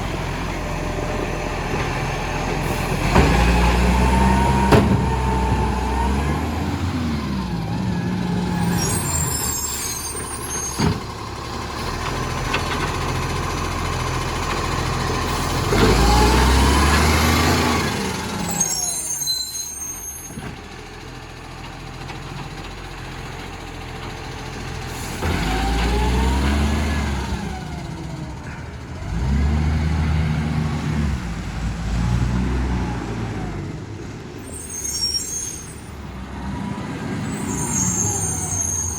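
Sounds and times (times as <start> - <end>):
diesel engine revving: 0.0 - 19.2, 21.0 - 38.9
air brake hisses: 37.3 - 38.9.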